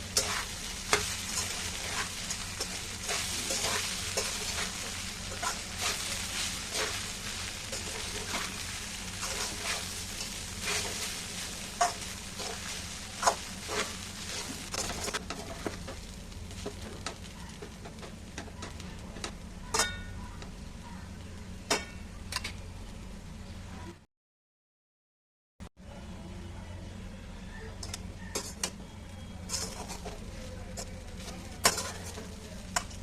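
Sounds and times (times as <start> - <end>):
spoon scraping a pan: 0.0 - 15.7, 29.5 - 33.0
frying sizzle: 0.0 - 23.9, 27.8 - 33.0.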